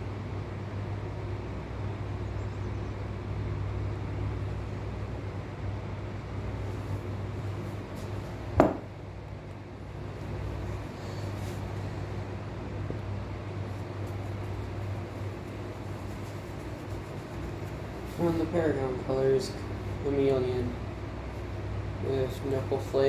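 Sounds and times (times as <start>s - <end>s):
low mechanical hum: 0.0s - 23.0s
sharp knock: 8.6s - 8.9s.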